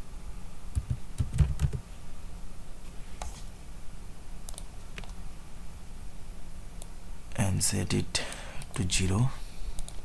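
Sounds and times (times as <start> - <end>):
computer keyboard typing: 0.8 - 1.8.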